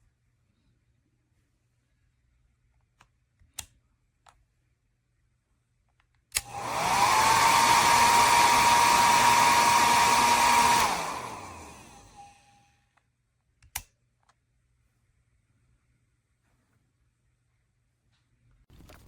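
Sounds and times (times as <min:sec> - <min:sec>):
hair dryer switch click: 0:06.3 - 0:12.0
hair dryer motor whine: 0:06.4 - 0:12.7.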